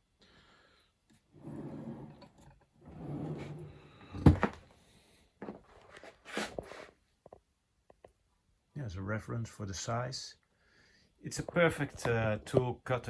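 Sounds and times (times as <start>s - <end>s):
drawer sliding on runners: 1.3s - 4.6s
drawer knocks and rattles: 2.9s - 4.6s.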